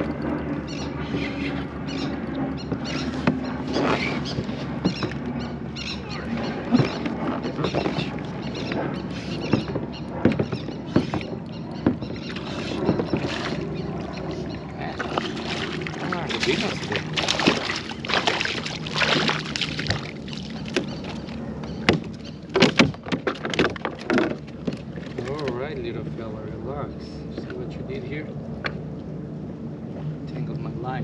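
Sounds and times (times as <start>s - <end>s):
water washing: 0.0s - 26.6s
knocks and clicks on a kayak: 2.7s - 5.3s, 9.4s - 13.6s, 20.7s - 25.6s.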